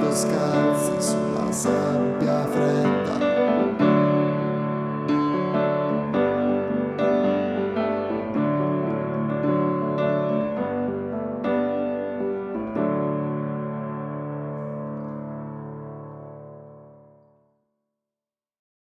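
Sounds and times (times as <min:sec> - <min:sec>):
ringing folk guitar chords: 0:00.0 - 0:04.0.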